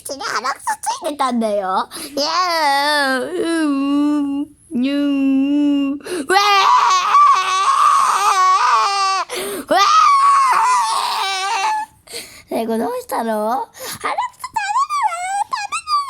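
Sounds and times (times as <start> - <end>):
person crying and wailing: 3.2 - 12.0, 14.5 - 16.0.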